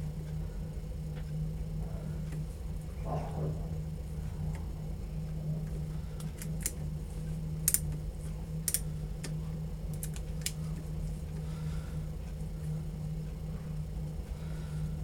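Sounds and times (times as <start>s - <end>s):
metal clicks and ticks: 7.6s - 8.0s, 8.6s - 10.6s.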